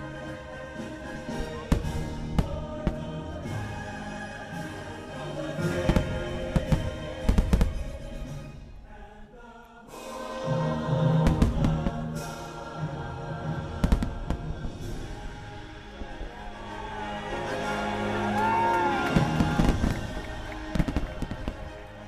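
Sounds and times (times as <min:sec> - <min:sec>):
music with a choir: 0:00.0 - 0:22.0
fireworks bursting with sharp bangs: 0:00.9 - 0:04.0, 0:05.5 - 0:08.2, 0:11.2 - 0:12.6, 0:13.6 - 0:22.0.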